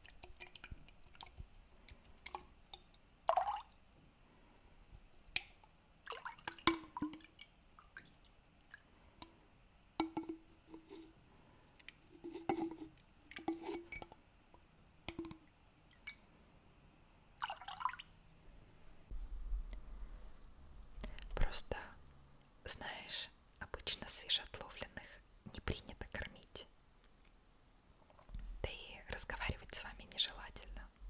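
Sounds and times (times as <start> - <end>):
small wet clicks: 0.0 - 3.0
water dripping and splashing: 0.0 - 4.0, 5.4 - 8.9, 17.4 - 18.2.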